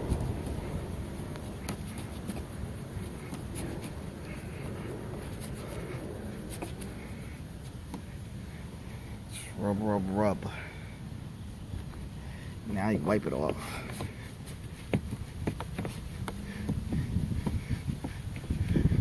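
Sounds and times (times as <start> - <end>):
cloth scrubbing car paint: 0.0 - 10.2.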